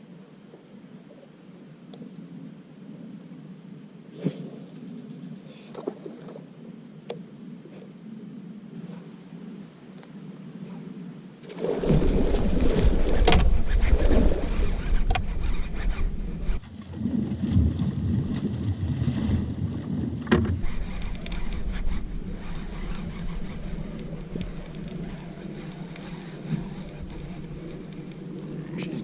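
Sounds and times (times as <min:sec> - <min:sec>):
wind on microphone: 0:07.5 - 0:29.0
boat engine running: 0:11.9 - 0:16.6, 0:20.6 - 0:29.0
sharp clicks and bumps: 0:13.0 - 0:16.6.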